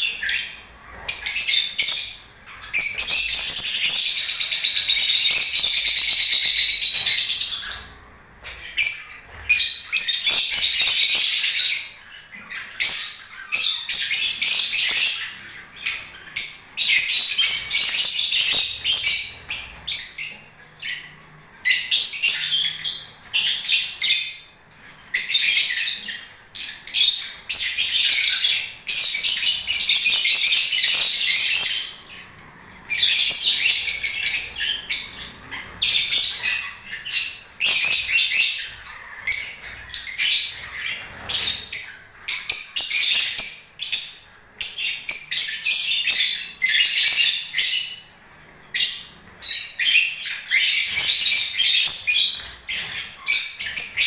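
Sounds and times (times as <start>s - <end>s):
lovebirds chirping: 0.0s - 54.0s.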